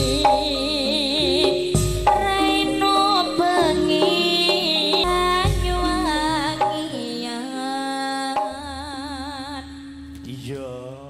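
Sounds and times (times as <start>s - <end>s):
sharp drum strokes: 0.0s - 7.2s
metallophone tones: 0.0s - 7.3s
person singing long wavering notes: 0.0s - 11.0s.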